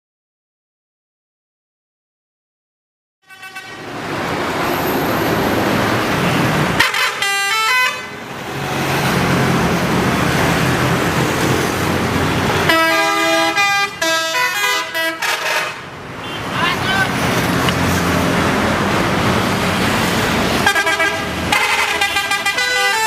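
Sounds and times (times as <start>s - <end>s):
multi-tone bus horns playing tunes: 3.2s - 4.0s, 6.7s - 9.2s, 12.6s - 16.9s, 20.5s - 23.0s
bus engines and traffic: 3.2s - 23.0s.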